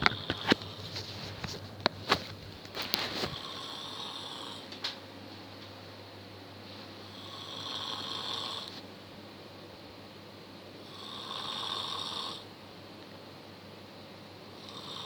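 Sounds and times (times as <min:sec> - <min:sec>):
person snoring: 0:03.2 - 0:04.7, 0:07.1 - 0:08.7, 0:10.8 - 0:12.5, 0:14.5 - 0:15.0.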